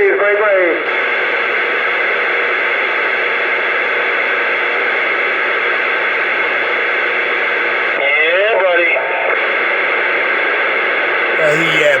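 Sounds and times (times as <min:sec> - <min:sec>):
radio static hiss: 0:11.4 - 0:12.0.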